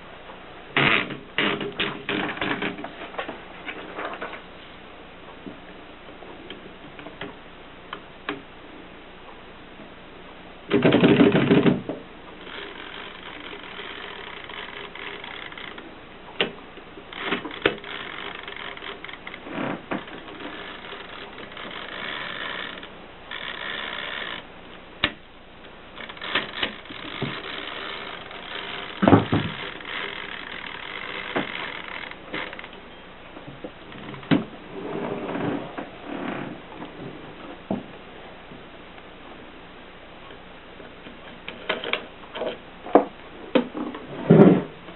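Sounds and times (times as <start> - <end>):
mechanical whirring: 10.7 - 37.0.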